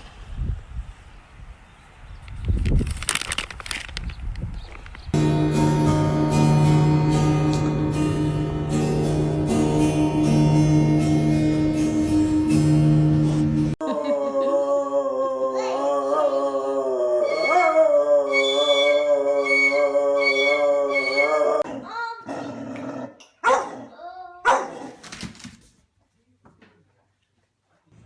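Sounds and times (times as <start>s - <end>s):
music: 5.2s - 13.8s
dog howling: 13.9s - 21.6s.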